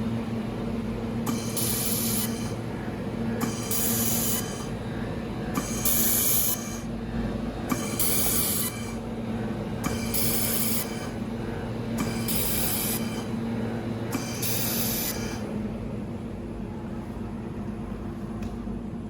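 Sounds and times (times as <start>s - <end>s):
machine humming: 0.0s - 17.2s
welding machine hiss: 1.3s - 2.6s, 3.4s - 4.8s, 5.5s - 6.9s, 7.7s - 9.0s, 9.8s - 11.2s, 11.9s - 13.4s, 14.1s - 15.5s.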